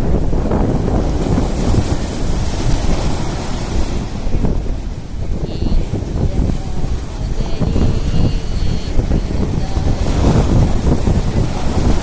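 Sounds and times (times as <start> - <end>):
ocean surf on a beach: 0.0 - 12.0
wind buffeting microphone: 0.0 - 12.0
faint high tone: 5.4 - 10.0.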